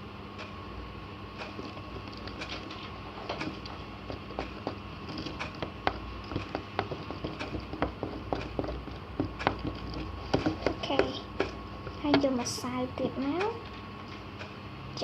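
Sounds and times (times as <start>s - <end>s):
utensil clicking stirring slime: 1.4s - 12.5s.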